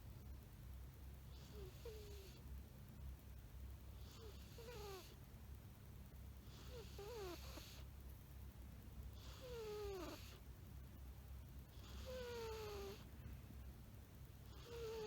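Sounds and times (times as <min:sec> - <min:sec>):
cat snoring: 0:01.3 - 0:02.4, 0:04.0 - 0:05.2, 0:06.4 - 0:07.9, 0:09.2 - 0:10.4, 0:11.7 - 0:13.1, 0:14.5 - 0:15.0.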